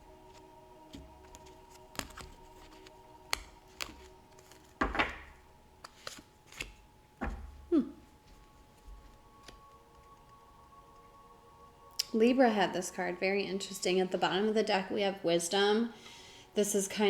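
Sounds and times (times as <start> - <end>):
soft musical drone: 0.0 - 17.0
cards riffling: 0.2 - 6.9
cards clicking: 0.3 - 6.8.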